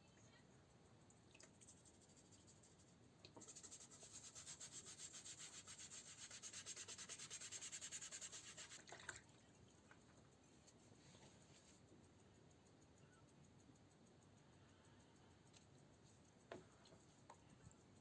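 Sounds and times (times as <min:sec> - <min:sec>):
sandpaper rubbing back and forth: 0:03.4 - 0:08.8.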